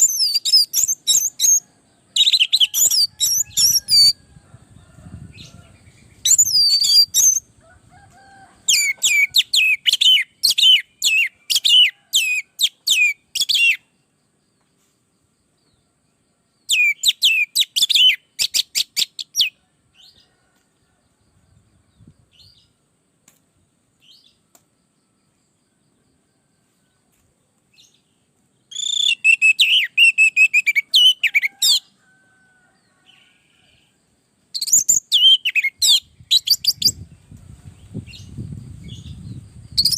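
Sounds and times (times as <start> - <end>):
bird singing whistled notes: 0.0 - 1.6, 6.0 - 7.5, 8.7 - 13.9, 16.6 - 19.6, 28.7 - 31.9, 34.6 - 37.2, 37.8 - 39.9.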